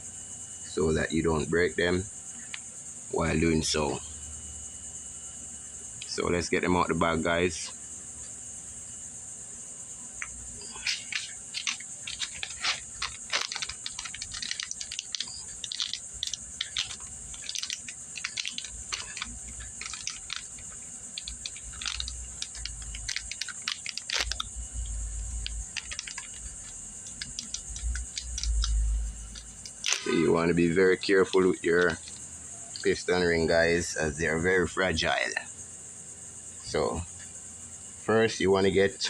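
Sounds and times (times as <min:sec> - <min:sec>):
plastic bag crinkling: 0:10.8 - 0:30.4.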